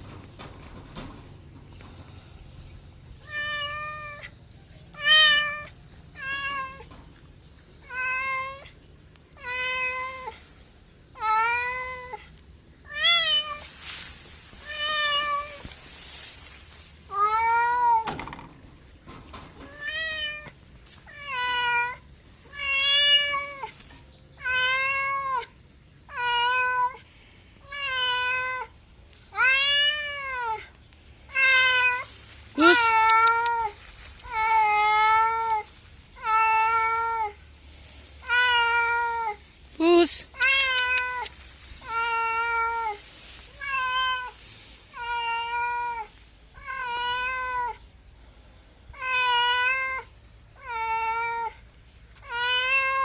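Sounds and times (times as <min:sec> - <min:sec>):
cat meowing: 0:03.2 - 0:04.4, 0:31.3 - 0:37.4, 0:40.3 - 0:44.4, 0:45.0 - 0:47.8, 0:48.9 - 0:51.6, 0:52.2 - 0:53.0.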